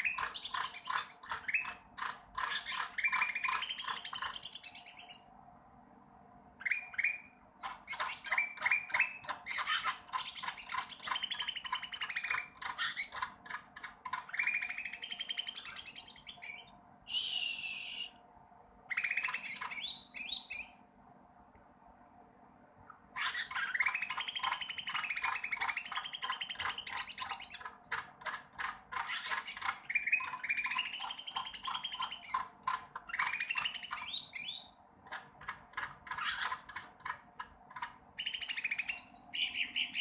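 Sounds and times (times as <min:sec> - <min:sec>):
songbird chirping and trilling: 0:00.0 - 0:05.3, 0:06.6 - 0:13.3, 0:14.1 - 0:16.8, 0:18.8 - 0:20.9, 0:22.9 - 0:27.8, 0:28.9 - 0:34.8, 0:36.0 - 0:36.8, 0:38.1 - 0:40.0.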